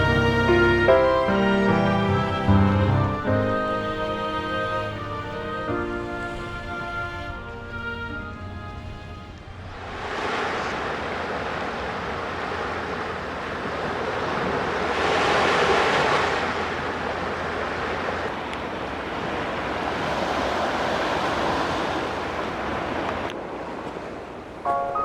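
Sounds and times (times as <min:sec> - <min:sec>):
sea waves washing onto shore: 0:09.4 - 0:25.0.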